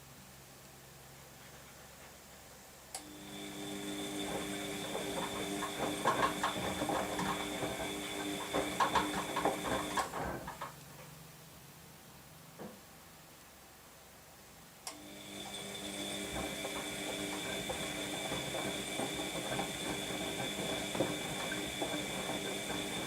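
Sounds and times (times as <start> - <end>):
washing machine motor whine: 3.0 - 10.7, 14.9 - 23.0
washing machine click: 4.2 - 10.8
tumbling load knocking: 4.3 - 10.6, 16.1 - 23.0.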